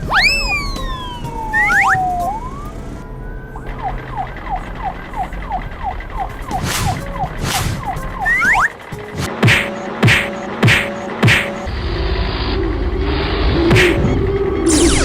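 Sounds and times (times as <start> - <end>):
falling whistle slide: 0.0 - 2.8, 6.5 - 8.8
short falling chirps: 0.0 - 2.8
quick rising sweep: 6.5 - 9.3.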